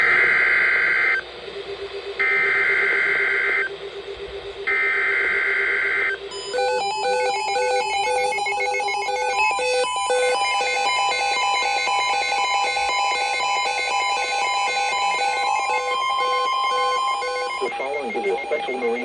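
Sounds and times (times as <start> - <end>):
harsh digital data bursts: 4.8 - 19.0
short electronic beeps: 15.6 - 19.0.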